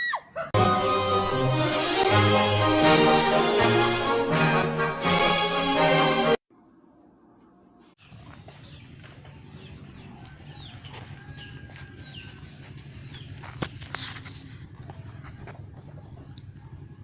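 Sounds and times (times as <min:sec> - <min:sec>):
music: 0:00.6 - 0:06.4.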